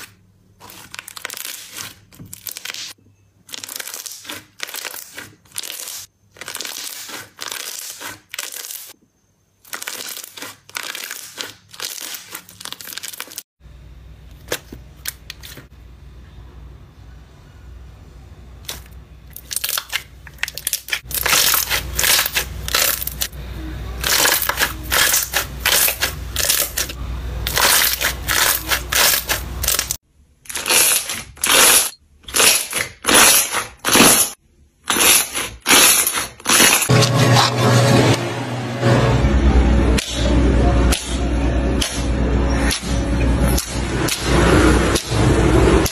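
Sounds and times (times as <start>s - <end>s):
crunchy slime crackling: 0.0s - 9.0s, 9.6s - 13.5s, 18.6s - 23.3s, 24.0s - 36.9s
low hum: 36.9s - 45.9s.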